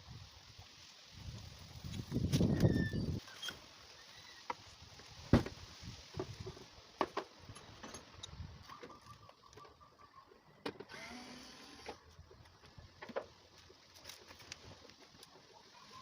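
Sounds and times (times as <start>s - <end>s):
faint squeak: 2.5s - 4.5s.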